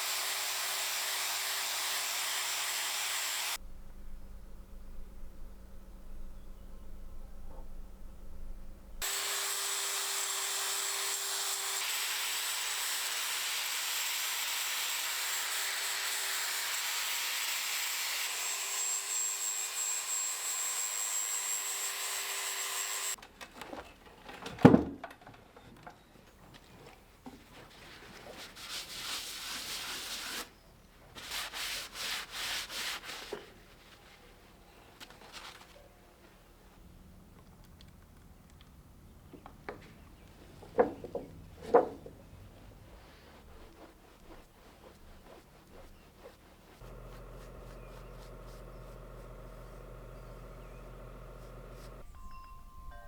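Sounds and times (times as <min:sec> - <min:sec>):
angle grinder grinding steel: 0:09.0 - 0:23.2, 0:46.7 - 0:52.2
short rasping strokes: 0:42.3 - 0:52.3.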